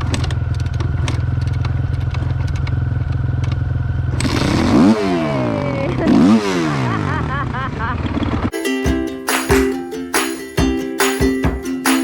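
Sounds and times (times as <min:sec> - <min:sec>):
dirt bike engine idling: 0:00.0 - 0:06.3
motorcycle engine revving: 0:00.0 - 0:08.5.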